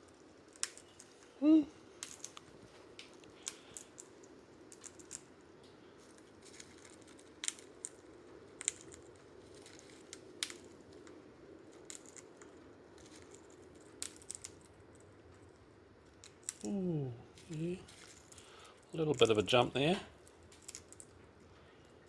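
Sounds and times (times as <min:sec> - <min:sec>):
bird pecking and hopping: 0:00.0 - 0:22.0.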